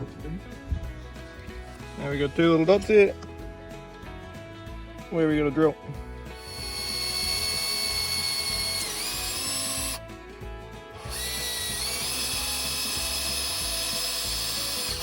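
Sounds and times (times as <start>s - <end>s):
cordless drill boring into wood: 6.3s - 10.0s, 11.0s - 15.0s.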